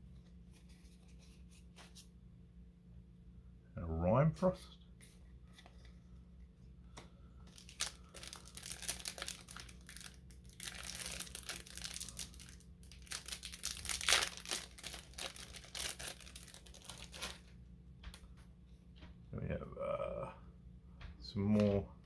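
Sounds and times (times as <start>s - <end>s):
plastic packaging crinkling: 7.5s - 17.5s.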